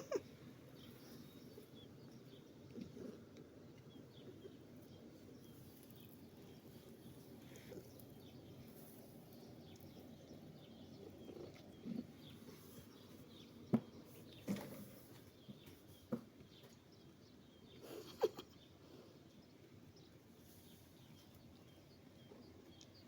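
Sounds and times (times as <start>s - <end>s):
faint outdoor ambience: 0.0s - 23.0s.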